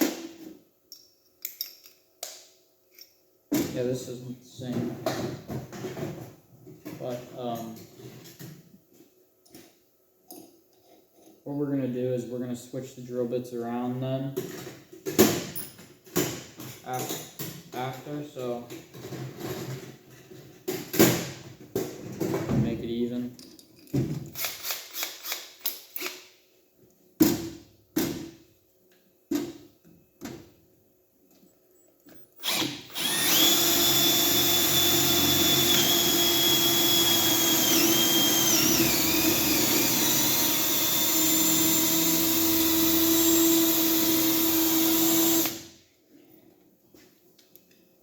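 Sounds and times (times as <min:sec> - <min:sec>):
cordless drills boring into wood: 0:32.4 - 0:45.7.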